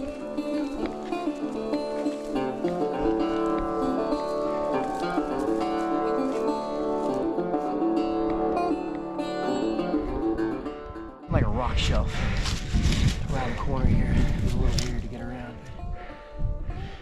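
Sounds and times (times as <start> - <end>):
plucked string instrument melody: 0.0 - 11.6.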